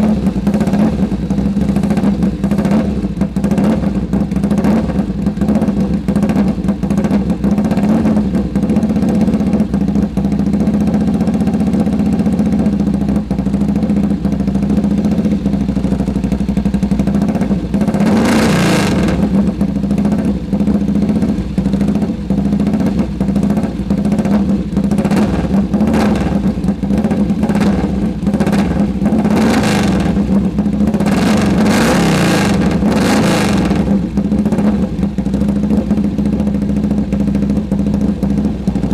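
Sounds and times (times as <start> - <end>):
motorcycle engine idling and revving: 0.0 - 38.9.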